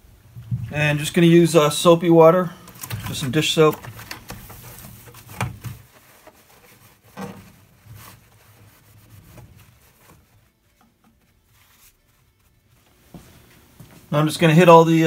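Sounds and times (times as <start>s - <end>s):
faint rubbing: 3.0s - 13.7s.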